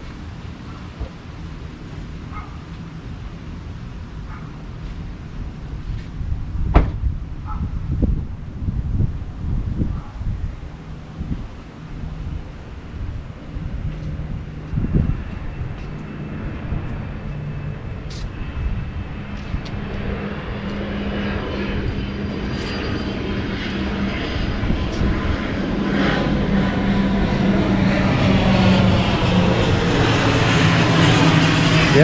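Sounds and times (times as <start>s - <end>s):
low engine drone: 0.0s - 32.0s.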